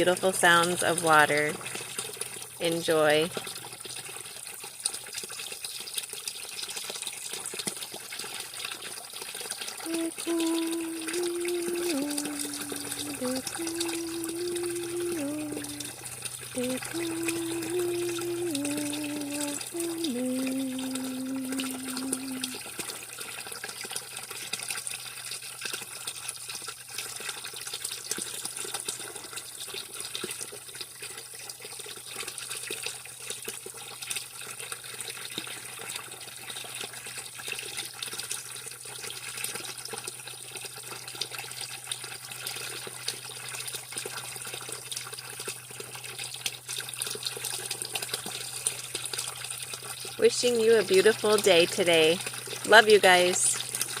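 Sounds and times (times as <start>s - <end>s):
running water: 0.0s - 54.0s
held pitched notes: 9.9s - 16.0s, 16.6s - 22.6s.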